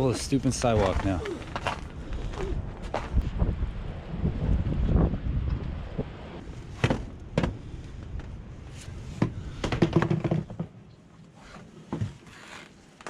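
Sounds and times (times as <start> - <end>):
sharp knocks and clatters: 9.2 - 10.8.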